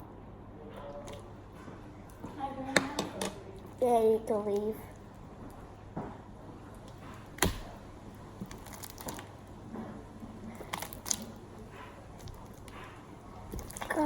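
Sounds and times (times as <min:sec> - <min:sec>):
hands squishing slime: 0:03.6 - 0:14.0.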